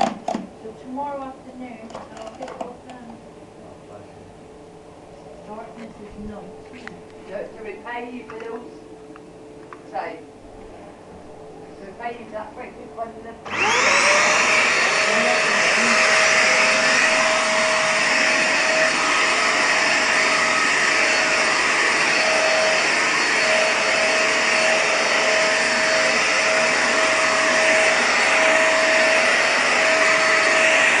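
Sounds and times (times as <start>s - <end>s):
vacuum cleaner motor running: 13.4s - 31.0s.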